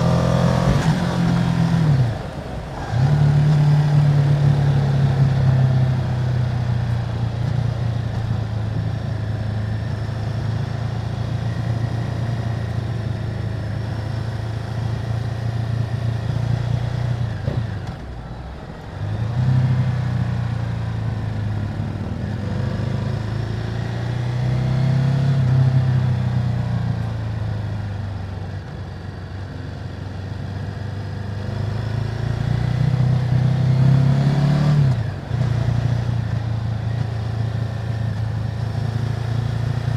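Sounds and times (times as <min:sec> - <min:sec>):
motorcycle engine running: 0:00.0 - 0:33.9, 0:34.8 - 0:39.9.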